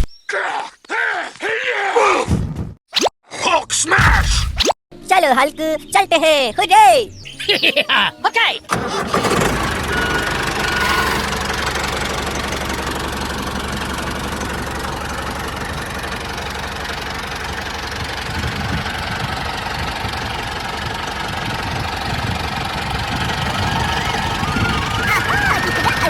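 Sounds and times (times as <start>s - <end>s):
tractor engine chugging: 8.7s - 26.0s.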